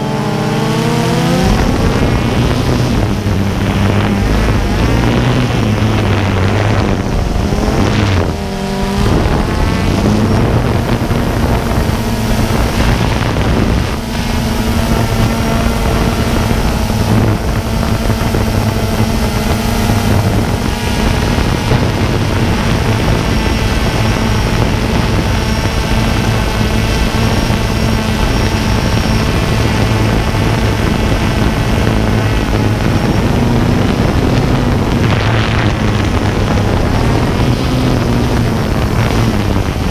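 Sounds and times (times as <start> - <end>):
drone propellers droning: 0.0 - 39.9.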